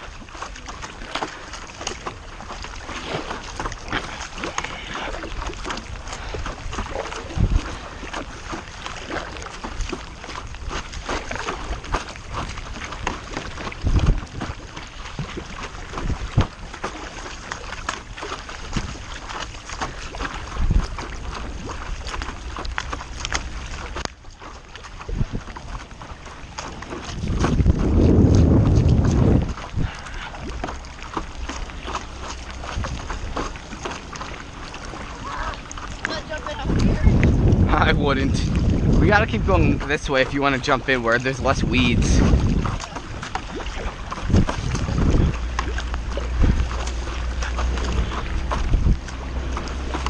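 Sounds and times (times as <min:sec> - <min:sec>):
paddle splashing in water: 0:00.0 - 0:50.0
wind buffeting microphone: 0:02.6 - 0:24.1, 0:24.8 - 0:50.0
rain tapping on water: 0:25.1 - 0:50.0
dull low thump: 0:27.0 - 0:31.3, 0:36.7 - 0:39.8
heavy low thuds: 0:27.2 - 0:30.1, 0:36.6 - 0:39.8.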